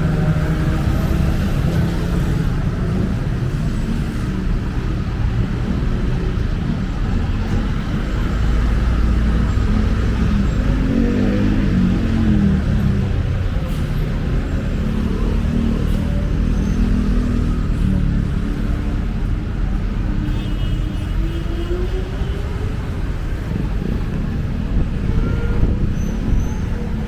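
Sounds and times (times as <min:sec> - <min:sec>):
traffic rumble: 0:00.0 - 0:27.0
vehicle accelerating: 0:08.2 - 0:20.0.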